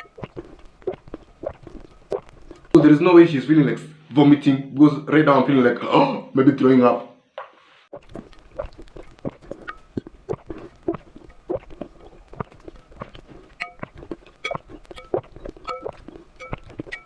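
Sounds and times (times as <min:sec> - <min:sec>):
wet eating mouth sounds: 0:00.0 - 0:02.8, 0:07.9 - 0:17.0.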